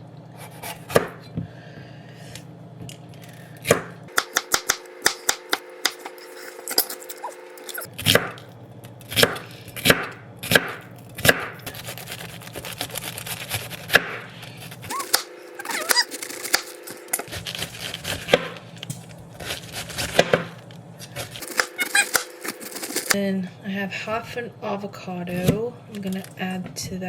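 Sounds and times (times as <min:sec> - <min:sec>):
knife chopping on cutting board: 0:00.4 - 0:01.3, 0:03.6 - 0:06.1, 0:08.0 - 0:08.4, 0:09.1 - 0:14.2, 0:14.8 - 0:20.6.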